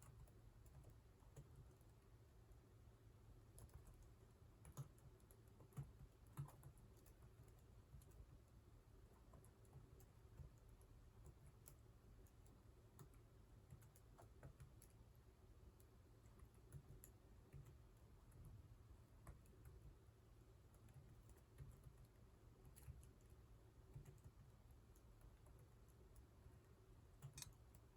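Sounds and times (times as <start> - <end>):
computer keyboard typing: 3.5 - 8.4, 9.2 - 15.0, 16.4 - 18.6, 20.8 - 26.1, 27.2 - 27.9.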